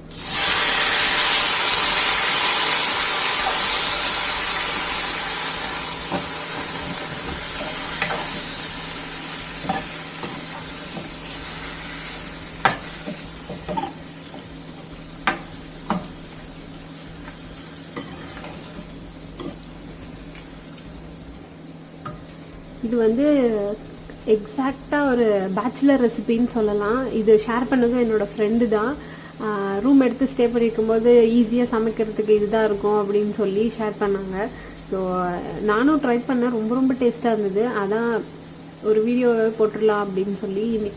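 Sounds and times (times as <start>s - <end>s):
chicken sizzling in oil: 0.0s - 26.2s.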